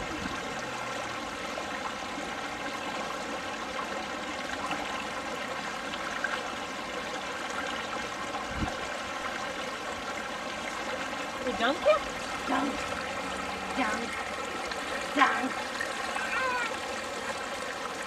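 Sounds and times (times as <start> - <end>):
stream rushing over rocks: 0.0 - 18.0.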